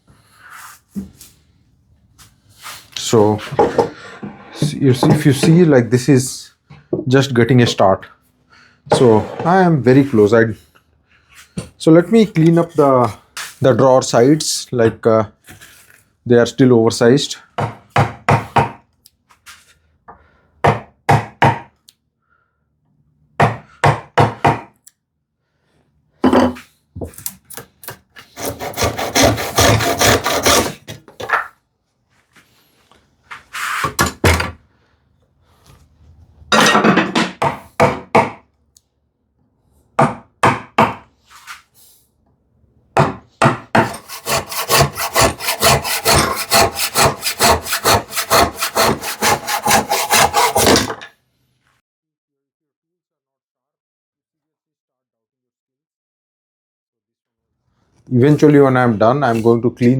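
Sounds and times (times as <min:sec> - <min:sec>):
hand plane cutting wood: 0:28.2 - 0:31.2, 0:43.4 - 0:51.0.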